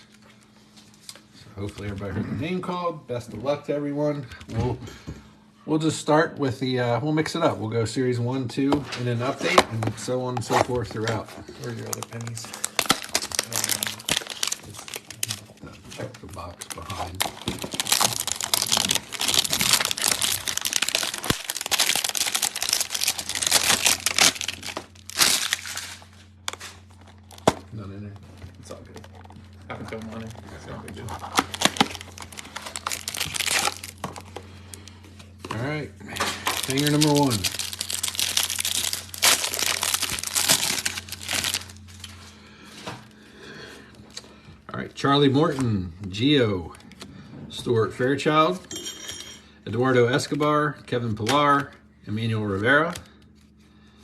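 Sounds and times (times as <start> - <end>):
plastic packaging crinkling: 10.4 - 42.3
box being torn open: 11.8 - 15.5, 16.6 - 26.0, 31.0 - 34.4, 36.4 - 41.8.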